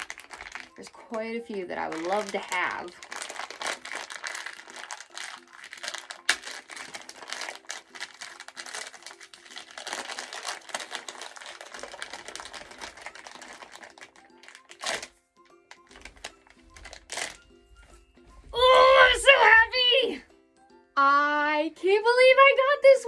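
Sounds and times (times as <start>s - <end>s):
foil bag crinkling: 0.0s - 17.6s
foil snap: 14.0s - 15.1s.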